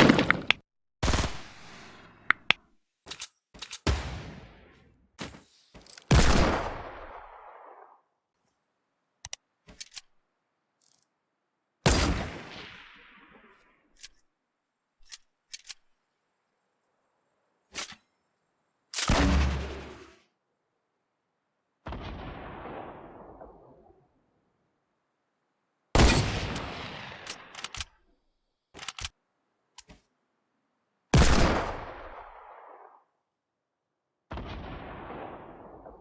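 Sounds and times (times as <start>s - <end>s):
gunshots with echo: 0.0s - 2.5s, 6.1s - 7.5s, 19.0s - 20.2s, 26.0s - 27.9s
short sharp clicks: 27.3s - 27.9s, 28.8s - 29.1s.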